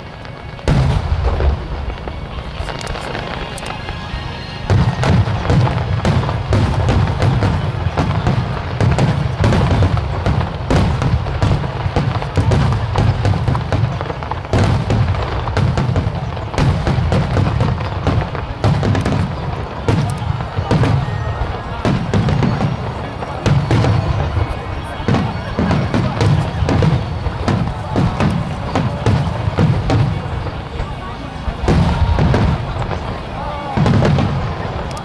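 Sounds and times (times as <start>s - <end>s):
music: 0.0s - 13.7s
fireworks booming and crackling: 0.0s - 35.0s.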